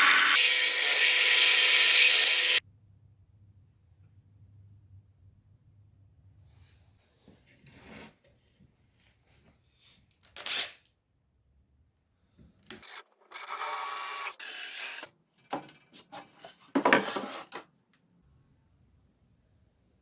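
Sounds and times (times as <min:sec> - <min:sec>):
rasping tool: 0:00.0 - 0:02.6.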